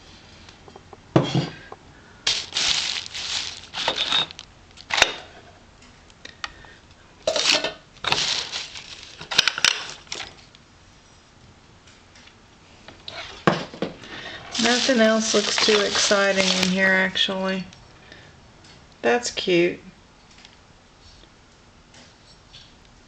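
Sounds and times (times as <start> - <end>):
rustling and scraping: 2.3 - 5.4, 7.3 - 11.3, 12.9 - 17.1.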